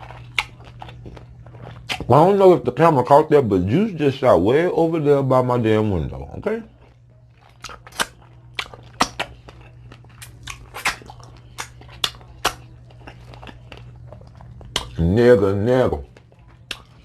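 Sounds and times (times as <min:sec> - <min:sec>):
crab shell cracking and crunching: 0:00.0 - 0:02.2, 0:06.8 - 0:15.0, 0:16.0 - 0:17.0.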